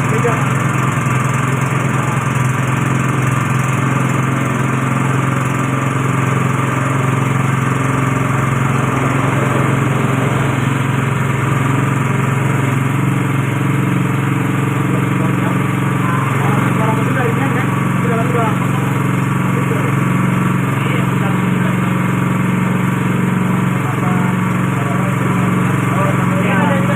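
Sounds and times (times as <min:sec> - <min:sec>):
machine motor humming: 0:00.0 - 0:26.9.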